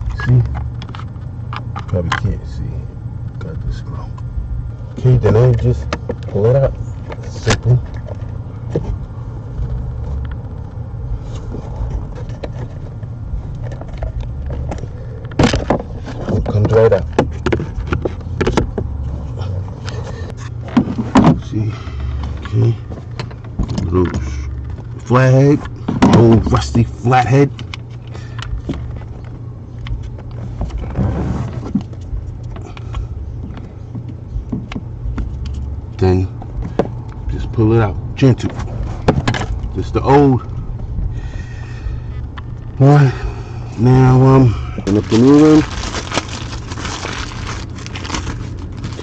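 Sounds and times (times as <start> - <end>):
steady low hum: 0.0 - 49.0
steady low rumble: 0.0 - 49.0
scraping rustle: 29.9 - 32.6, 44.8 - 49.0.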